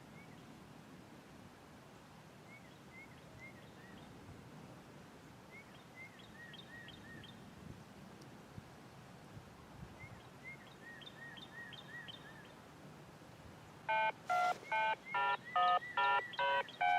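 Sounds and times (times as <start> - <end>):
small bird chirping: 14.0 - 16.9.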